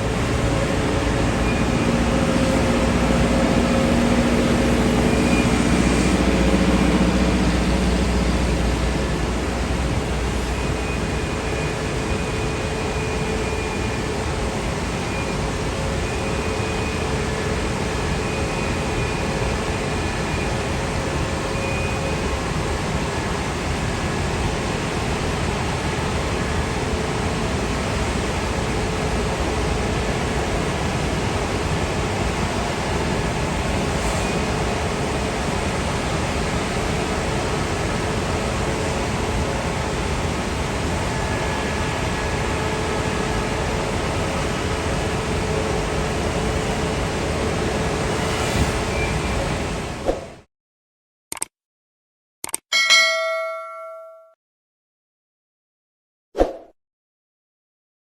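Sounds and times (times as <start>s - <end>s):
jet engines running: 0.0s - 50.0s.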